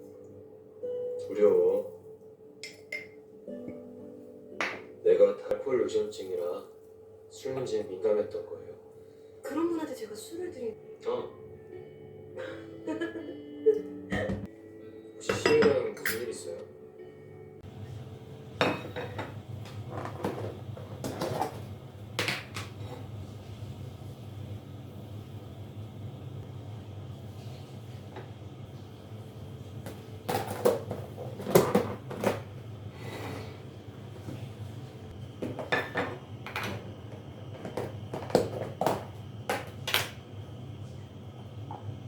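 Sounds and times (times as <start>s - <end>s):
kitchenware clinking: 2.6s - 3.2s, 15.2s - 16.6s, 18.6s - 21.6s, 35.4s - 36.9s.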